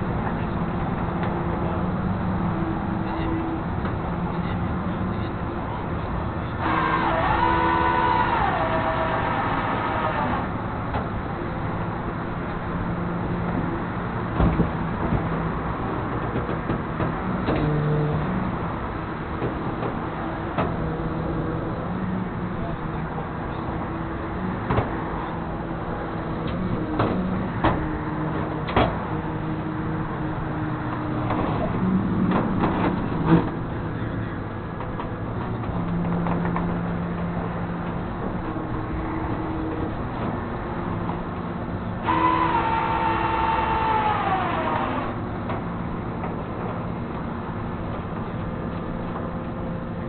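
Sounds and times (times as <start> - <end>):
vehicle running noise: 0.0 - 50.0
vehicle horn: 6.6 - 10.4, 42.0 - 43.8.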